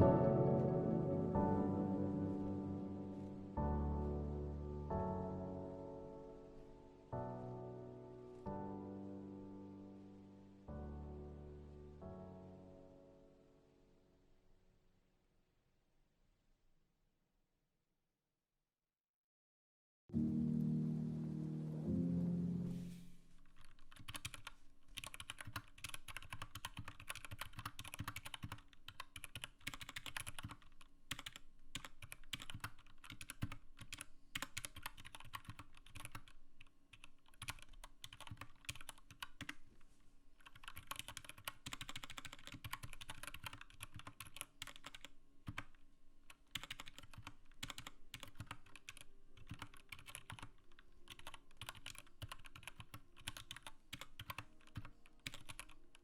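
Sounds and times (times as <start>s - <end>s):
mechanical keyboard typing: 23.5s - 39.6s, 40.4s - 56.0s.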